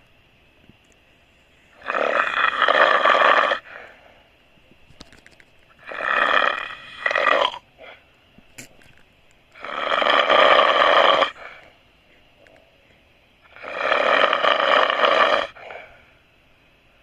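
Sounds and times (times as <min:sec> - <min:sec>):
person snoring loudly: 0:01.8 - 0:03.7, 0:05.8 - 0:07.6, 0:09.6 - 0:11.4, 0:13.5 - 0:15.7.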